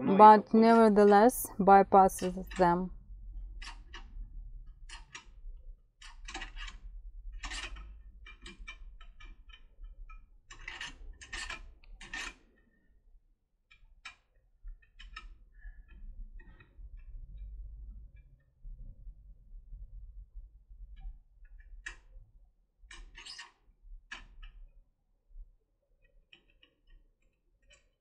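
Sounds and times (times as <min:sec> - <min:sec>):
lock pick clicking and scraping: 0:10.6 - 0:12.4.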